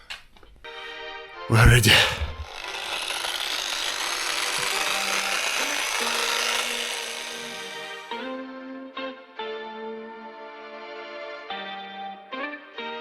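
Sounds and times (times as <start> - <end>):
power sander grinding glass: 2.4 - 8.2.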